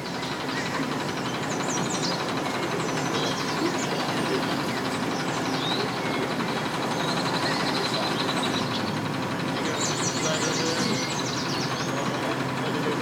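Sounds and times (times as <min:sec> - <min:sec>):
birds chirping: 0:00.0 - 0:13.0
engine idling: 0:00.0 - 0:13.0.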